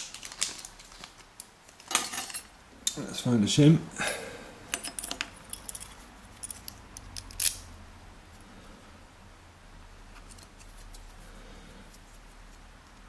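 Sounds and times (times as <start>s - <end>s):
metal lock tools clicking: 4.7s - 7.6s.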